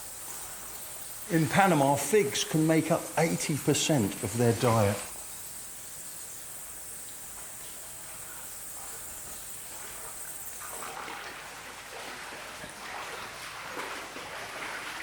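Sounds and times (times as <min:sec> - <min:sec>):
high-pitched hiss: 0:00.0 - 0:10.8.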